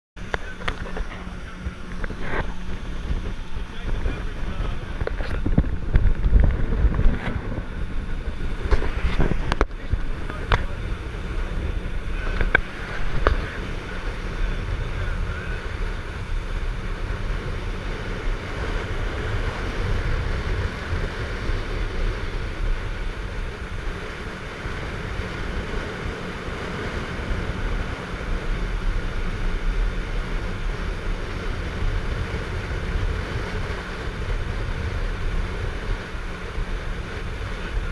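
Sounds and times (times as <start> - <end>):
motorboat engine running: 0.0 - 37.9
wind buffeting microphone: 0.2 - 37.9.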